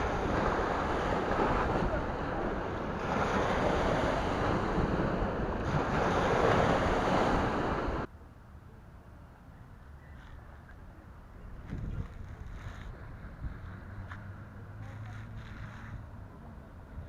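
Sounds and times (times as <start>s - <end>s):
waves on shore: 0.0s - 8.1s
wind buffeting microphone: 0.0s - 8.1s, 10.4s - 17.0s.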